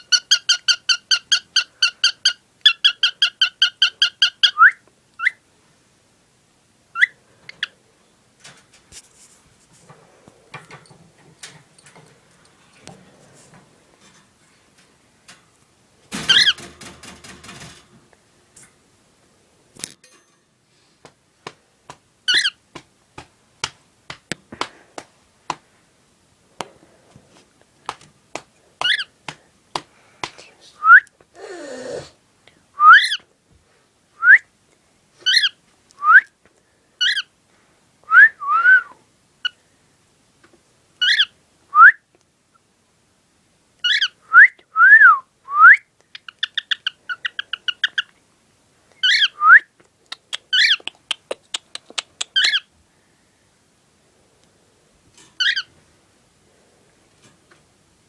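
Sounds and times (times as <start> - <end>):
bird squawk: 49.0 - 49.4, 50.5 - 50.8, 52.3 - 52.7, 55.4 - 55.7.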